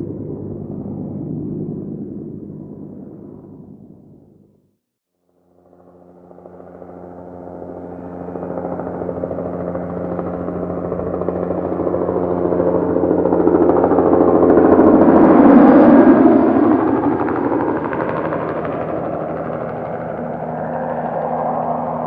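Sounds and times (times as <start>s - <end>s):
helicopter engine and rotor: 5.2s - 22.0s.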